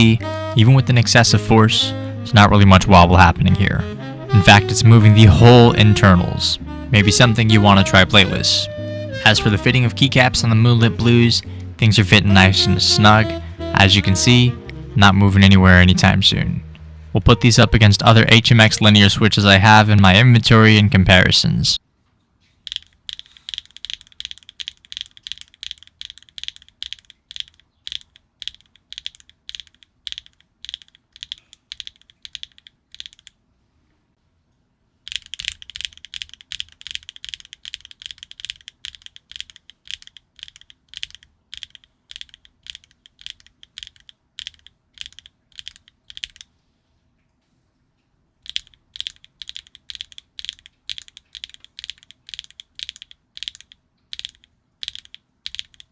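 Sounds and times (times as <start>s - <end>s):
mechanical keyboard switches clacking: 22.7s - 33.3s, 35.1s - 46.5s, 48.4s - 55.9s.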